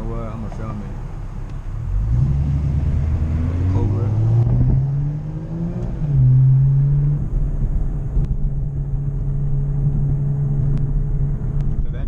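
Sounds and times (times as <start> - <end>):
car engine accelerating: 0.0 - 12.0.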